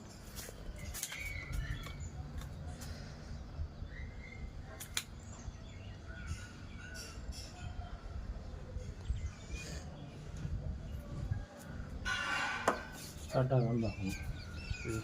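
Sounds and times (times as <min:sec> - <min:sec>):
low rumble on microphone: 0:07.4 - 0:12.1.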